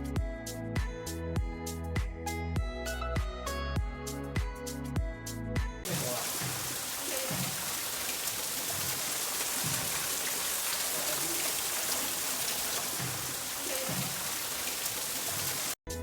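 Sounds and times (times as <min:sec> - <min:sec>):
waterfall splashing: 0:05.9 - 0:15.8.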